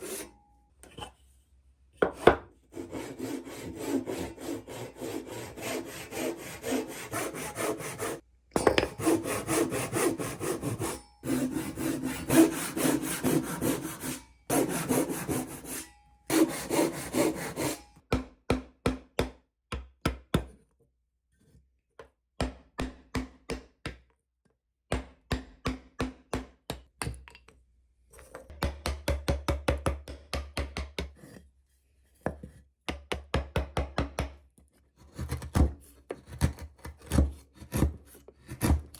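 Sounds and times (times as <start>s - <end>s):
hand saw cutting wood: 0.0s - 0.3s, 2.7s - 8.2s, 8.8s - 18.0s, 35.1s - 38.9s.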